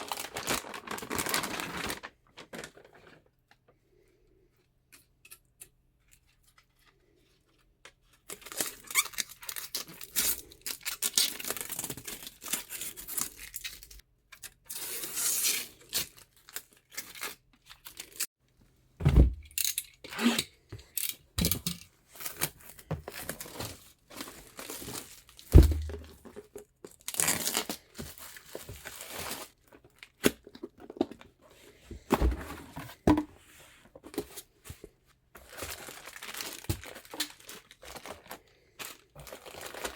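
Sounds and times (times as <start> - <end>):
packaging crinkling and tearing: 0.0 - 3.3, 22.2 - 31.2, 35.4 - 39.9.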